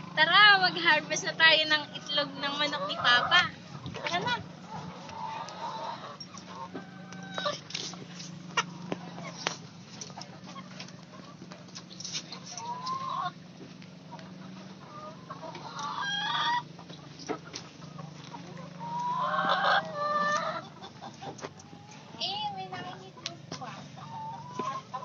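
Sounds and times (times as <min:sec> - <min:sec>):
chickens clucking and calling: 0:00.0 - 0:25.0
steady low hum: 0:00.0 - 0:25.0.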